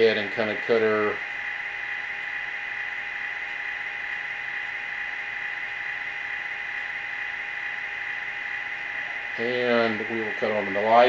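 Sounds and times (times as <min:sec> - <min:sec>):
diesel idle through small speaker: 0:00.0 - 0:01.2, 0:08.9 - 0:11.0.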